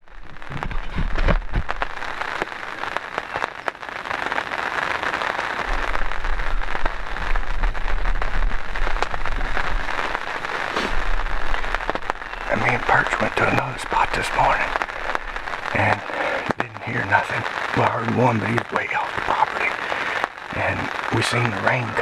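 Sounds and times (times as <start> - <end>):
raindrops hitting close: 0.0 - 22.0
steady rain falling: 0.0 - 22.0
low rumble: 5.7 - 16.2.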